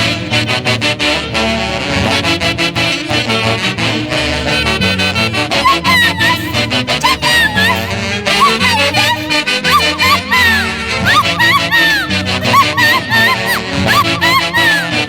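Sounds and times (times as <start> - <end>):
brass band music: 0.0 - 15.0
high sliding notes: 5.6 - 15.0.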